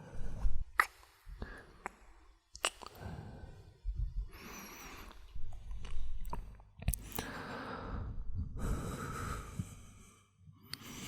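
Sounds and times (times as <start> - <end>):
wet lip clicks of kissing: 0.8 - 1.1, 1.8 - 3.0
man breathing and sighing: 7.0 - 11.0.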